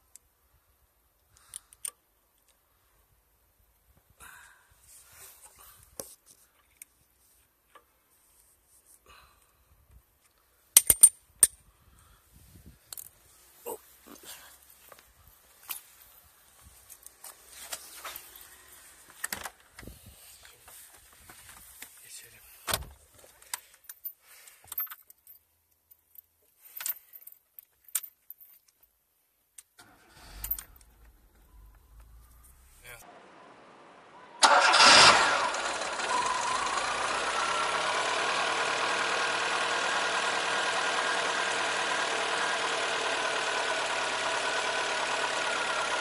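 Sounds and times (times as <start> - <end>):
car engine starting and running: 29.8 - 46.0.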